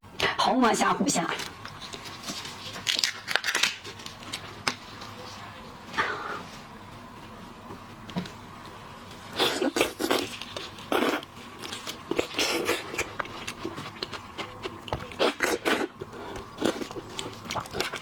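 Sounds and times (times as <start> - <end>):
chewing and sucking seafood: 9.3 - 18.0.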